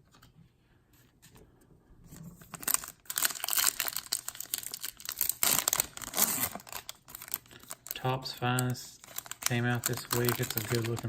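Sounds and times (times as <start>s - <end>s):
foil wrapper crinkling and tearing: 2.4s - 11.0s.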